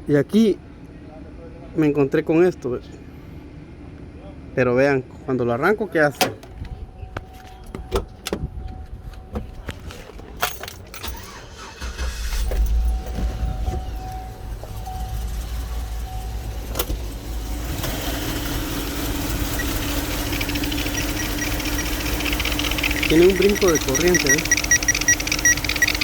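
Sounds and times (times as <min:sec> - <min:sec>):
car engine starting and rumbling: 0:06.0 - 0:26.0
clicks: 0:19.6 - 0:26.0.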